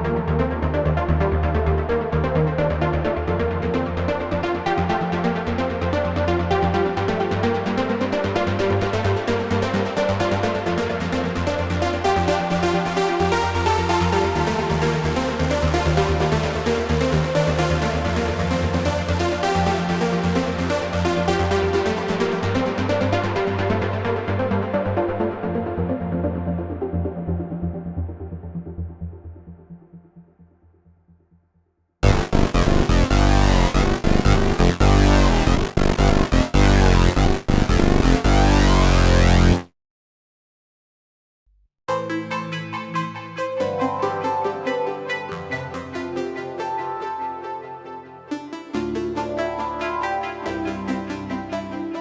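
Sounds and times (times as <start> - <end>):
trance electronic music: 0.0 - 29.5, 32.0 - 39.7, 41.9 - 52.0
stuttering electronic synth pulses: 32.0 - 39.7.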